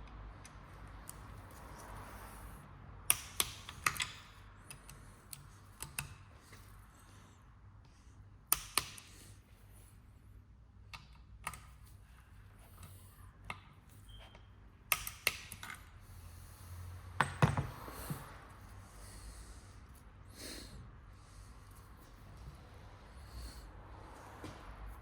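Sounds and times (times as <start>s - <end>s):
tools clicking and knocking: 3.1s - 6.2s, 12.8s - 15.9s.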